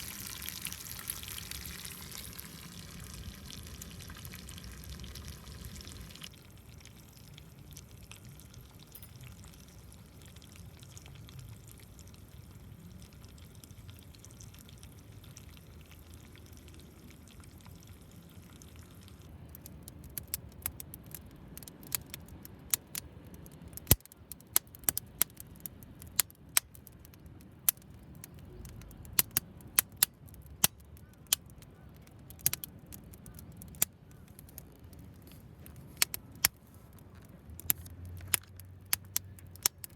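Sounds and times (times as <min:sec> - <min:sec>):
wood fire hissing: 0:00.0 - 0:06.3
fire popping and crackling: 0:00.0 - 0:15.6, 0:16.3 - 0:39.9.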